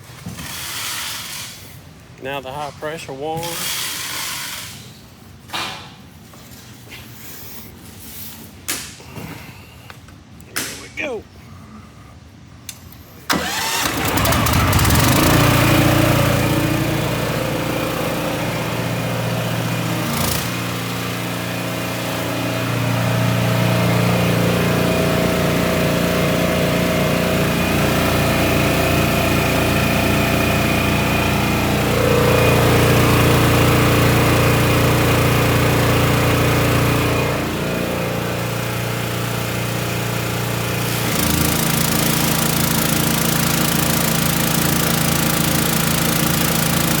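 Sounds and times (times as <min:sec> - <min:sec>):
small gasoline engine running: 0:13.3 - 0:47.0.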